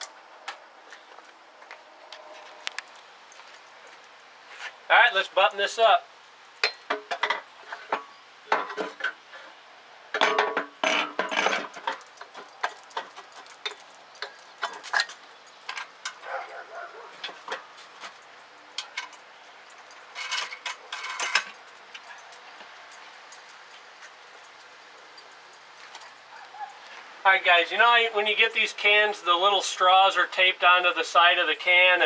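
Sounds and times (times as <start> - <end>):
metal tools clinking and scraping: 6.6 - 26.9.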